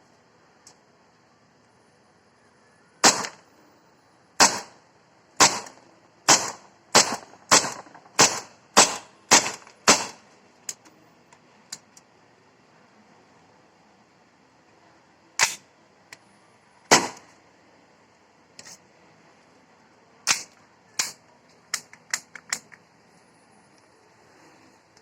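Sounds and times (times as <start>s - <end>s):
airsoft pistol shots: 3.0s - 3.4s, 4.4s - 4.8s, 5.4s - 10.2s, 15.4s - 15.6s, 16.9s - 17.3s, 20.3s - 21.2s.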